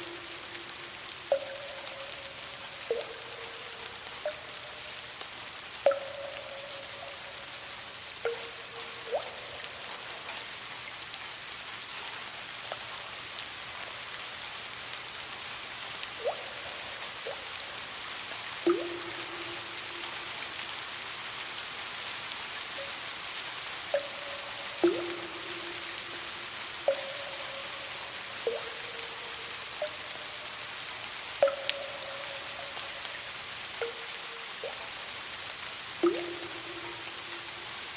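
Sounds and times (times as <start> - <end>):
water drops plinking: 0.0 - 11.0, 16.1 - 17.8, 18.6 - 21.1, 23.8 - 35.2, 36.0 - 37.9
soft rain hiss: 0.0 - 37.9.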